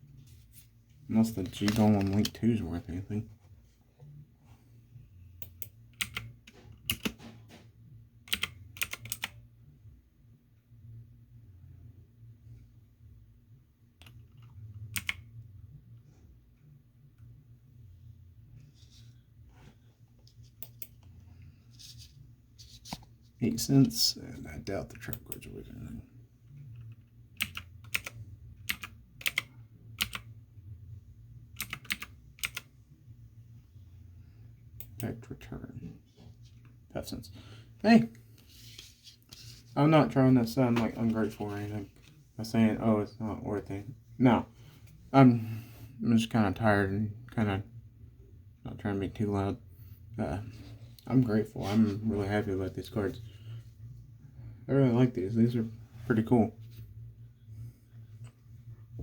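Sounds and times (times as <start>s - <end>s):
faint low hum: 0.0s - 59.0s
keyboard typing clicks: 5.4s - 7.2s, 8.3s - 9.3s, 14.0s - 15.2s, 27.4s - 30.2s, 31.6s - 32.6s.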